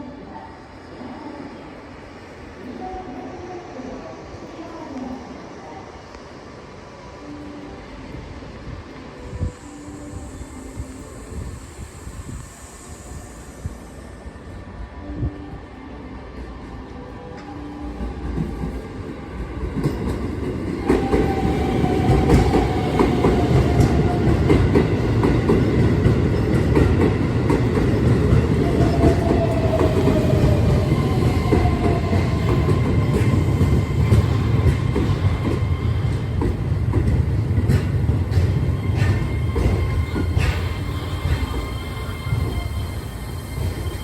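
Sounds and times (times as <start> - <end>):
train rumble: 0.0 - 44.0
train wheels clattering: 19.7 - 42.9.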